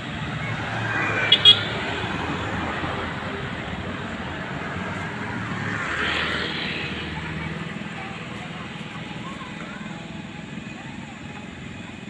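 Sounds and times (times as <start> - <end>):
city street traffic passing: 0.0 - 12.0
vehicle horn toots: 1.0 - 1.9.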